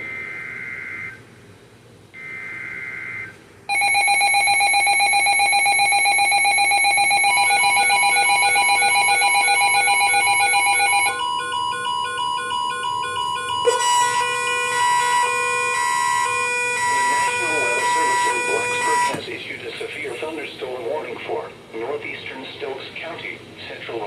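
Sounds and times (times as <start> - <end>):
beeping tones: 2.2 - 19.2
digital data screech: 11.1 - 19.2.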